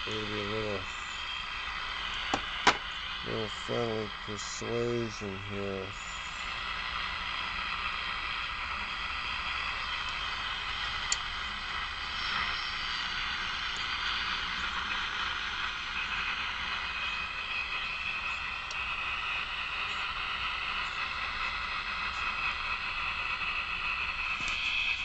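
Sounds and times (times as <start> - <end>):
radio static hiss: 0.0 - 17.0
faint whistle tones: 12.0 - 15.1.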